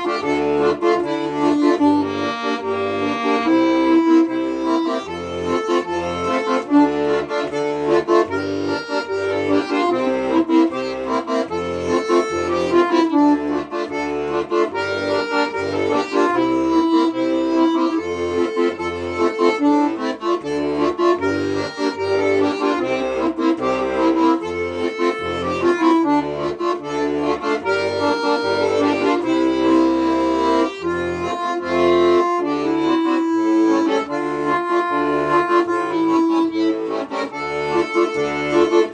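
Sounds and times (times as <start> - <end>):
solo accordion tune: 0.0 - 38.9.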